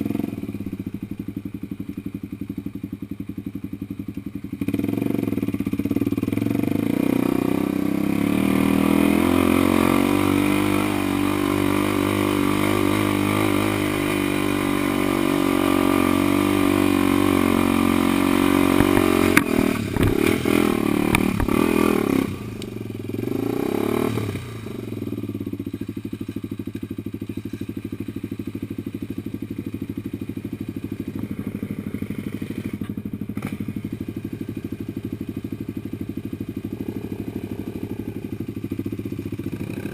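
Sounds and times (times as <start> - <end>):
off-road vehicle engine revving: 0.0 - 0.8, 4.6 - 25.2, 30.8 - 34.0, 36.5 - 38.6, 39.4 - 39.9.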